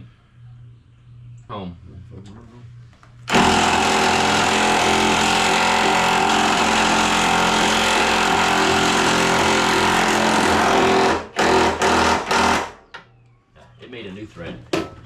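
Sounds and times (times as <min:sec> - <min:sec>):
impact wrench hammering: 0:03.3 - 0:12.8.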